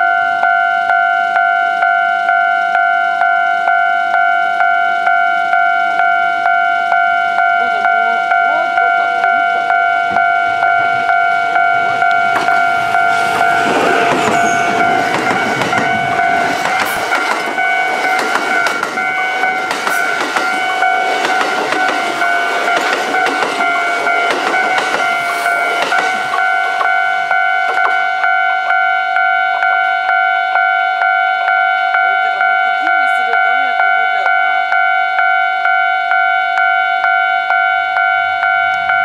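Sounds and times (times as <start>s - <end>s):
level crossing bell ringing: 0.0s - 39.0s
train wheels clattering: 10.1s - 28.4s.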